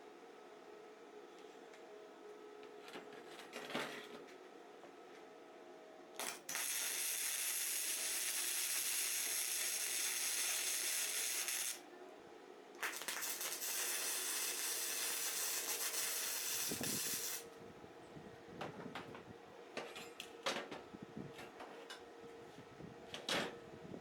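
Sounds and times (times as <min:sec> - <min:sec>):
arc welding crackling and hissing: 0:06.2 - 0:11.8, 0:12.8 - 0:17.5.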